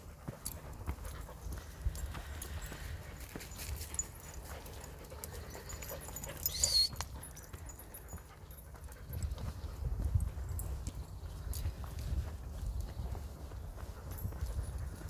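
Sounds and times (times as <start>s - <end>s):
footsteps on path: 0.0s - 15.0s
loud high-pitched call: 6.5s - 7.0s.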